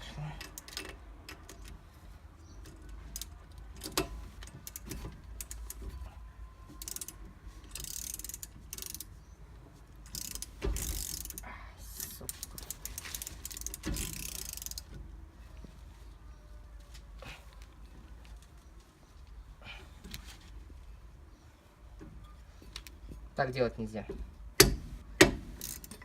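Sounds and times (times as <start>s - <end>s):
ratchet wrench clicking: 6.8s - 9.2s, 10.0s - 14.9s, 24.6s - 26.0s.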